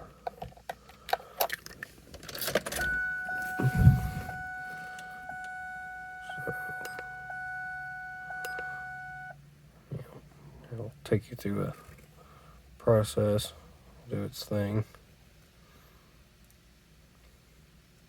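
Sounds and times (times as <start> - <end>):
keys rattling and clicking: 0.9 - 5.6
electronic warning chime: 2.8 - 9.4
dull thump: 3.6 - 4.4.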